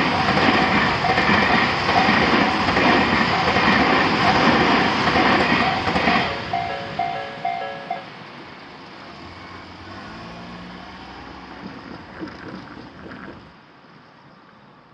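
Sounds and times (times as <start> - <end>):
train rumbling: 0.0 - 13.8
level crossing alarm tones: 1.0 - 2.5, 5.6 - 8.2.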